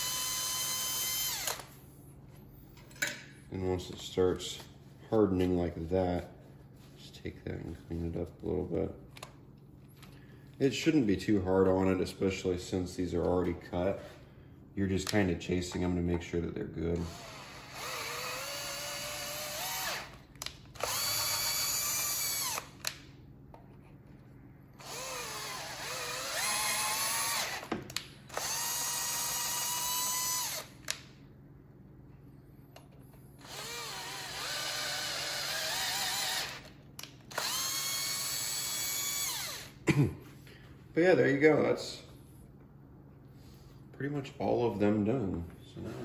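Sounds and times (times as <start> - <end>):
power drill whining: 0.0 - 1.8, 17.0 - 20.2, 20.8 - 22.8, 24.8 - 27.7, 28.3 - 30.8, 33.4 - 36.7, 37.3 - 39.8.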